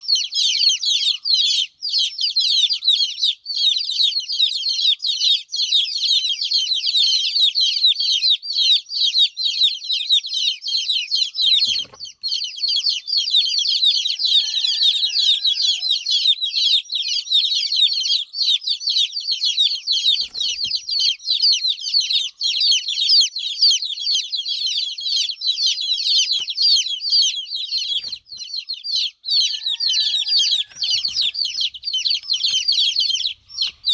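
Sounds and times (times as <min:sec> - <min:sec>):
baby chicks peeping: 0:00.0 - 0:33.9.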